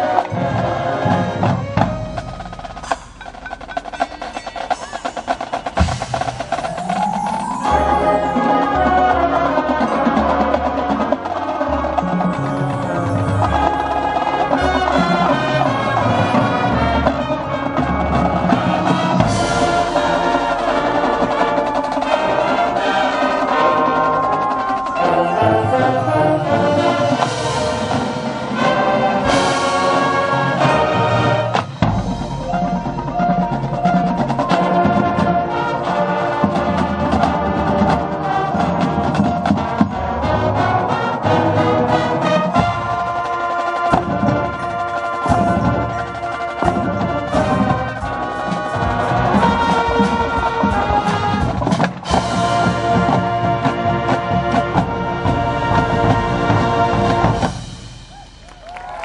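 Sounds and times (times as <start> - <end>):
drumline rapid sharp strikes: 0.0 - 59.0
marching band playing: 0.0 - 59.0
brass holding sustained chords: 6.8 - 51.6.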